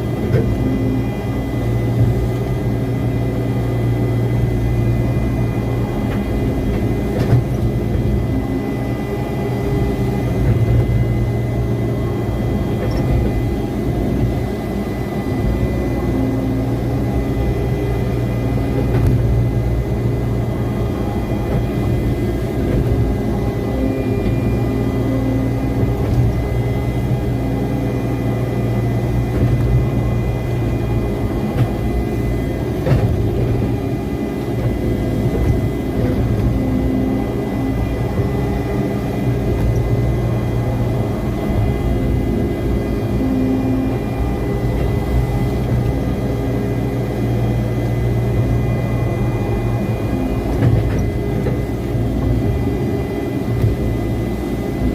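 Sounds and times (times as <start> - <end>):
excavator diesel engine running: 0.0 - 54.9
high whine: 0.0 - 54.9.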